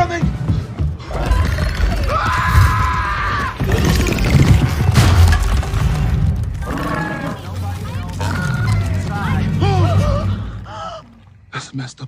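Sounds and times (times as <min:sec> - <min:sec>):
film score music: 0:00.0 - 0:12.0
smashing and shattering crashes: 0:04.4 - 0:06.6.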